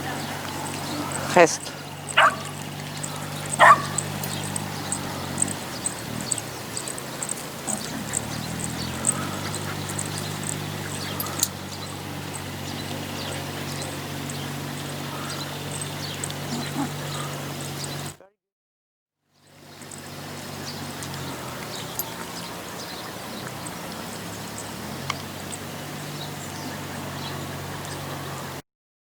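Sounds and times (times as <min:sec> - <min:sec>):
steady low hum: 0:00.0 - 0:17.9
faint high ticks: 0:00.4 - 0:16.5, 0:23.4 - 0:25.6
dog barking: 0:00.6 - 0:14.0.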